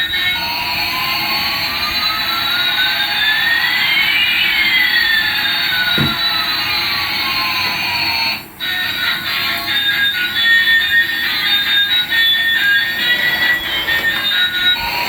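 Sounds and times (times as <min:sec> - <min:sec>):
short low thump: 0:06.0 - 0:06.3.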